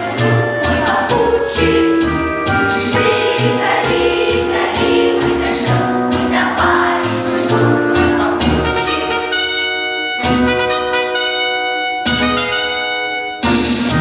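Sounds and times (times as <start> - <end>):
choir singing: 0.0 - 10.1
music with steady beat: 0.0 - 14.0.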